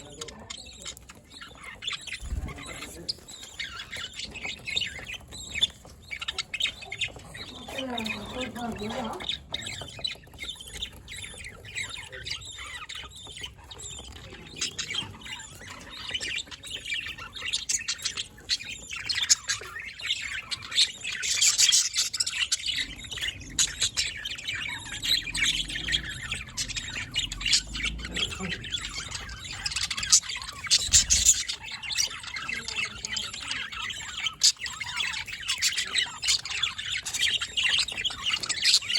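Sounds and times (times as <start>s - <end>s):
budgerigars chattering: 0.0s - 38.9s.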